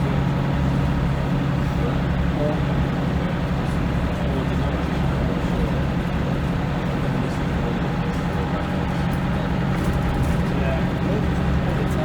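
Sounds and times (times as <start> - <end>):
diesel bus engine running: 0.0 - 12.0.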